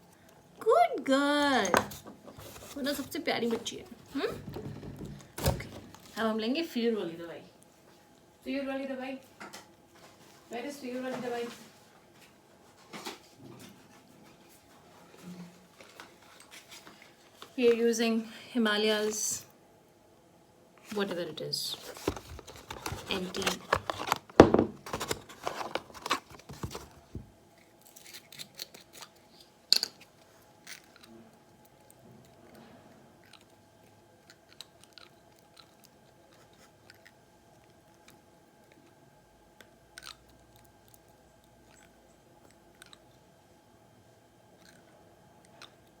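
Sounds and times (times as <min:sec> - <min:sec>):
faint steady hum: 0:00.0 - 0:46.0
handling rustling and clicking: 0:21.7 - 0:32.7.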